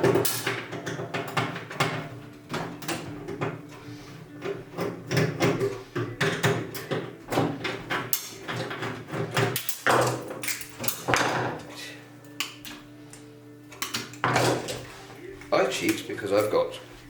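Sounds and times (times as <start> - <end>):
metal parts knocking and clicking: 0.0 - 3.6, 4.4 - 11.6.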